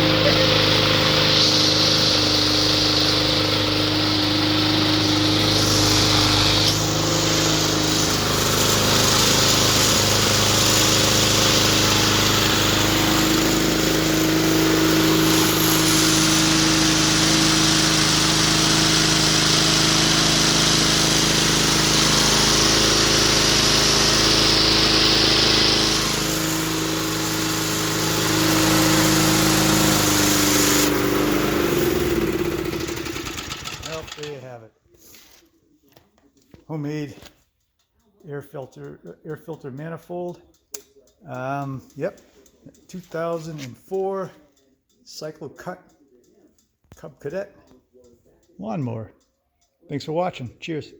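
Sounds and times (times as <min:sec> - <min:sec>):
lawn mower engine running: 0:00.0 - 0:34.5.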